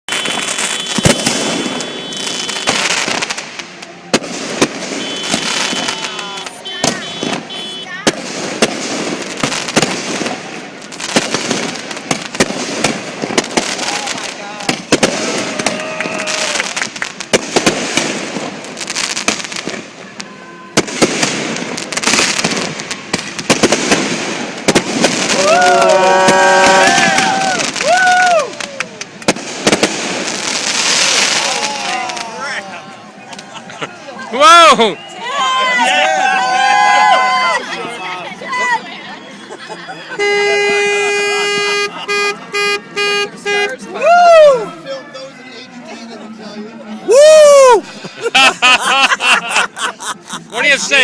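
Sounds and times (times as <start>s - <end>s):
fireworks bangs: 0.1s - 32.6s, 40.1s - 44.5s.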